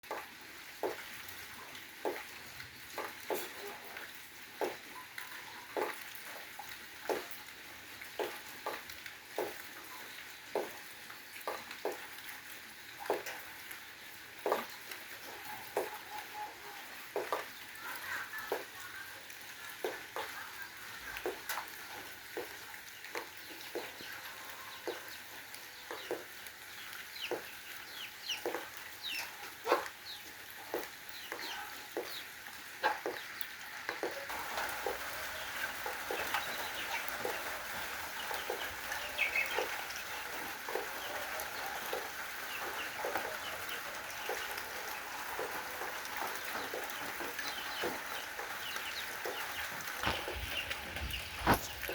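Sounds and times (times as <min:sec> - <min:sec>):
chickens clucking: 0:02.9 - 0:06.5, 0:14.4 - 0:51.9.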